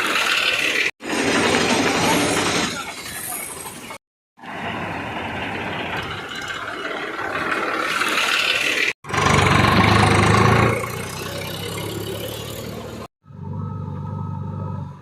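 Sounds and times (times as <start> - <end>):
diesel engine running: 9.1 - 15.0.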